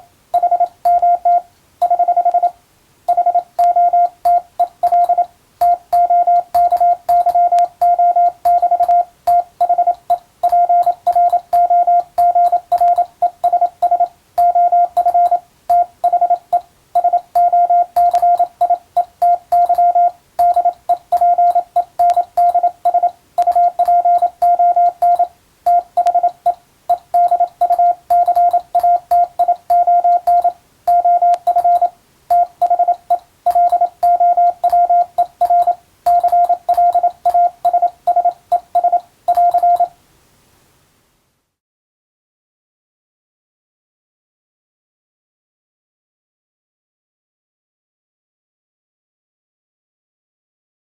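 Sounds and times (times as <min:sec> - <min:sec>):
morse code tone: 0:00.0 - 0:40.0.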